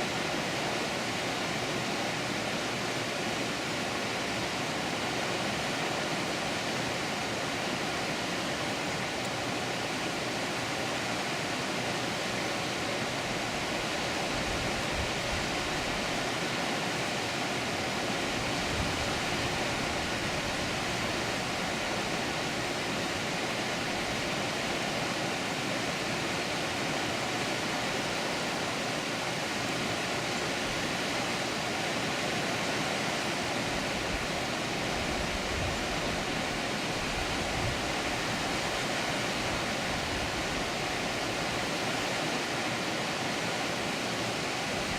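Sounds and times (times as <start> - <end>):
water rushing over dam: 0.0 - 44.9.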